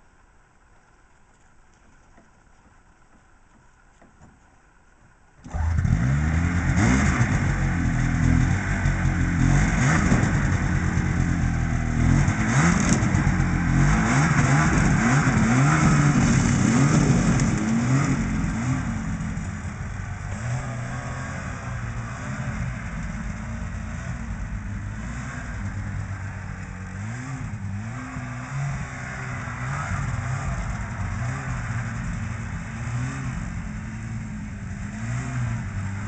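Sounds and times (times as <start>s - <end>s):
snowmobile engine revving: 5.4s - 36.0s.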